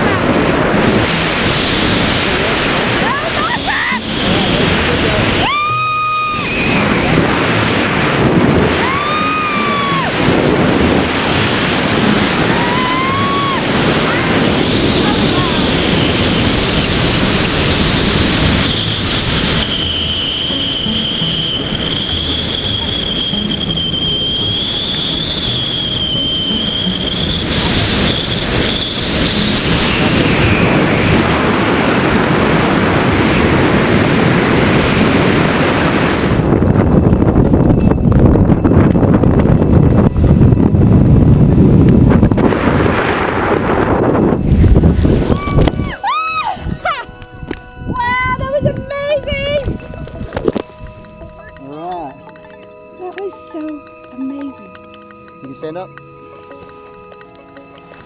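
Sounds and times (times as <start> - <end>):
wind rushing over microphone: 0.0 - 51.6
high-pitched yells: 3.1 - 4.0, 12.5 - 13.6, 45.4 - 47.0.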